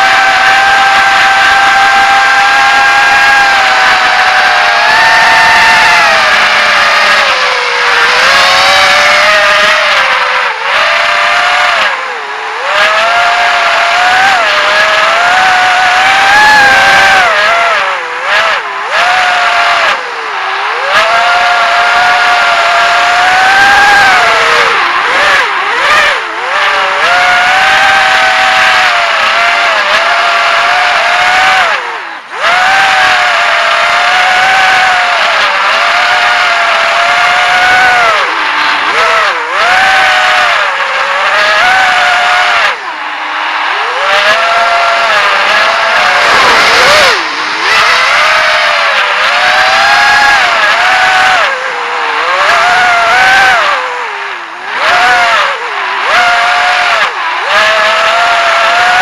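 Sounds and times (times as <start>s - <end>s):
drone motors whining: 0.0s - 59.0s.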